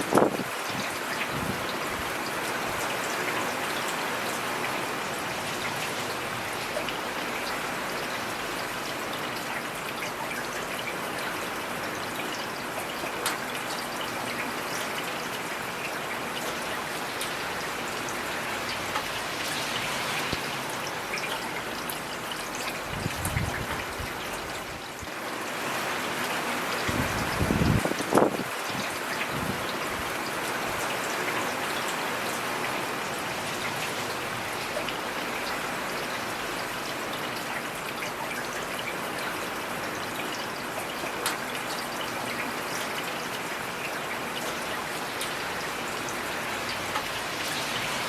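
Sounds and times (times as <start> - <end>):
heavy rain falling: 0.0 - 48.0.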